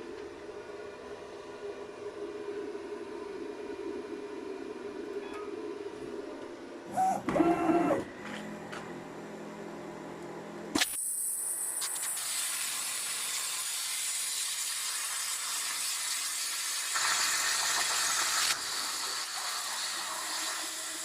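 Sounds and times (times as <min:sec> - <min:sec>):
plasma cutter hissing: 0:10.8 - 0:21.0.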